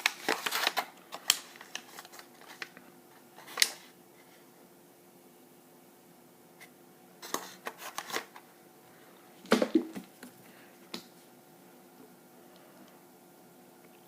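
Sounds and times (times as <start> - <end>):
plastic packaging crinkling: 0.0 - 2.8
knocks on plastic container: 9.5 - 10.1.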